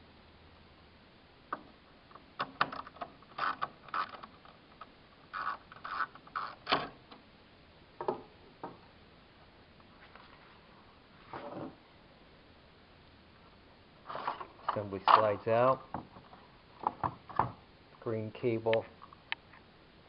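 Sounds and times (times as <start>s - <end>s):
screwdriver scraping: 2.8s - 4.3s, 5.4s - 6.9s.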